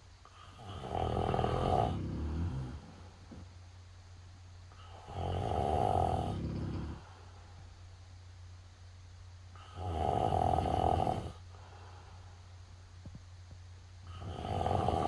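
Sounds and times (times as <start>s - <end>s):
steady low hum: 0.0s - 15.0s
loud snoring: 0.4s - 2.9s, 4.8s - 7.0s, 9.6s - 11.4s, 14.1s - 15.0s.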